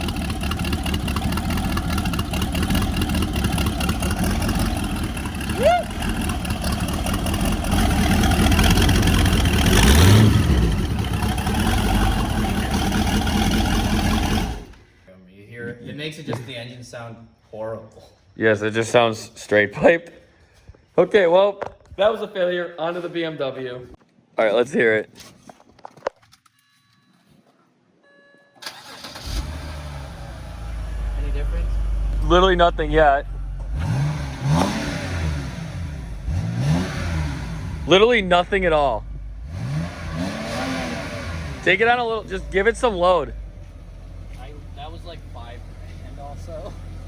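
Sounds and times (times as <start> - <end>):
car engine revving: 0.0 - 14.9, 28.8 - 47.0
starter cranking: 0.0 - 14.9
short faint beeps: 26.5 - 27.3, 28.0 - 28.6.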